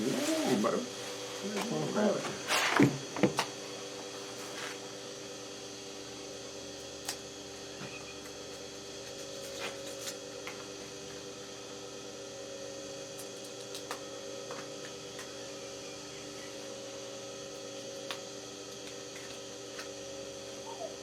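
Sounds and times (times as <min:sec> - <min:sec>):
hum of held tones: 0:05.1 - 0:13.1, 0:14.0 - 0:21.0.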